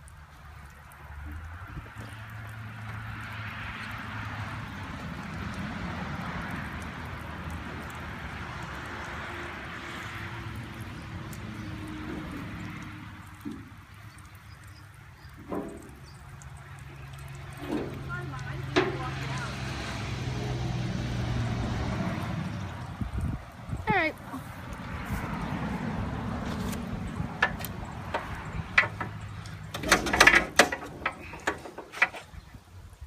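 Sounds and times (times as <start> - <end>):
bulldozer engine running: 9.4 - 32.4.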